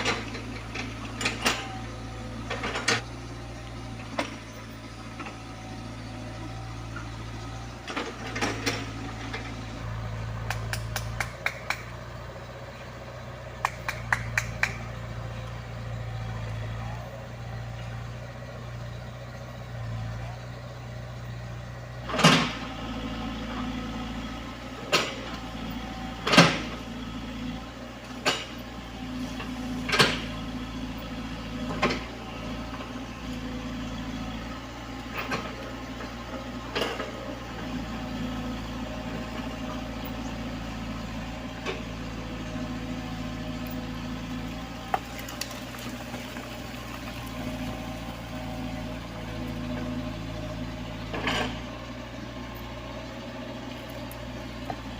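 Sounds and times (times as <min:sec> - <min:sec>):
excavator diesel engine running: 0:00.0 - 0:54.9.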